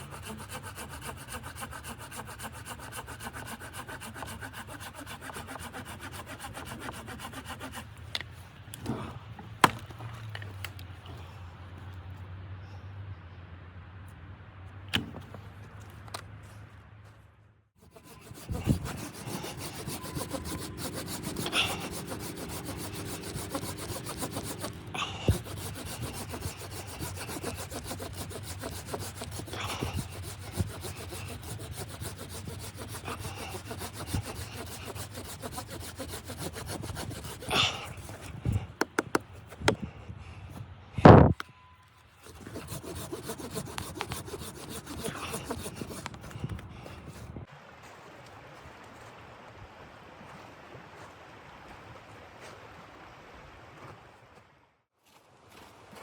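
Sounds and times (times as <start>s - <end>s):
wood being sawn: 0.0s - 8.2s, 17.8s - 39.9s, 42.2s - 47.3s.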